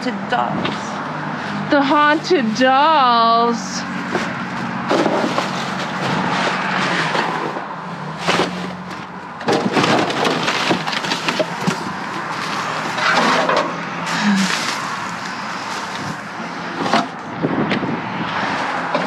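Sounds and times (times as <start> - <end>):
junk clattering in a dumpster: 4.0 - 17.8.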